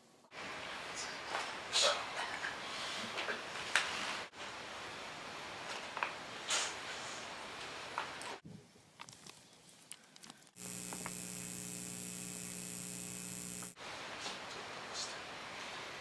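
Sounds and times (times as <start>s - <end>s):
steady electric buzz: 10.6s - 13.8s.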